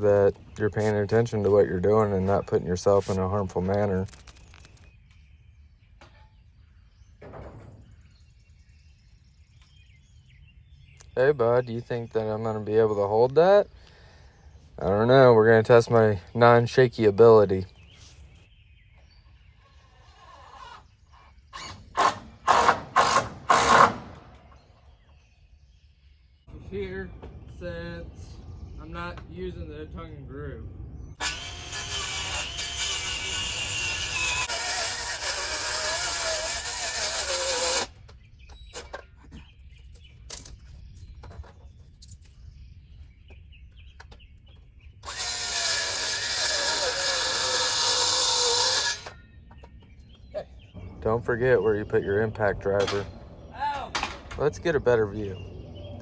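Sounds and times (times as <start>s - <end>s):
power driver driving screws into wood: 21.5s - 24.4s, 31.2s - 38.0s, 45.0s - 49.2s
impact driver driving a screw: 21.6s - 24.2s.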